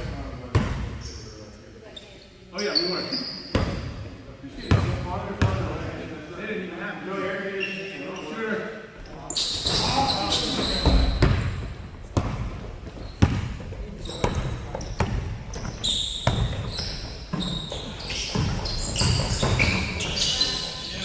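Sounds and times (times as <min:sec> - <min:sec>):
shoe squeaks: 0:01.0 - 0:05.0, 0:07.5 - 0:11.8, 0:13.0 - 0:21.0
basketball bouncing on a court: 0:10.7 - 0:20.1.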